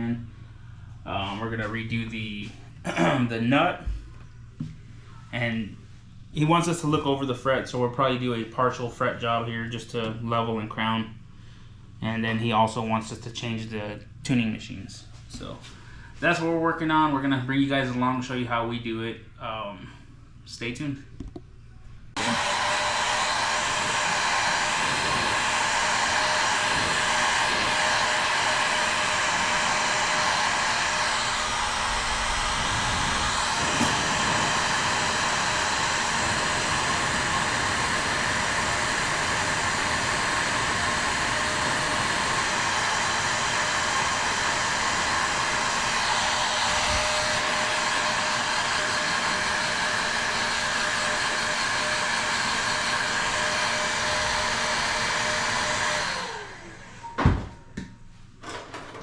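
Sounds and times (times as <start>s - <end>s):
electric blower motor running: 22.2s - 57.8s.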